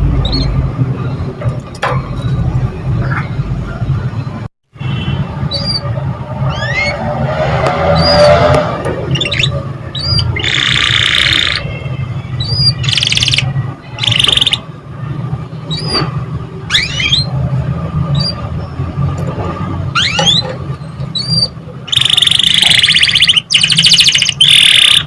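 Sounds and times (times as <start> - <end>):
canary singing: 5.5 - 7.0, 9.1 - 14.7, 15.5 - 16.0, 16.6 - 17.4, 18.1 - 19.0, 19.9 - 25.0.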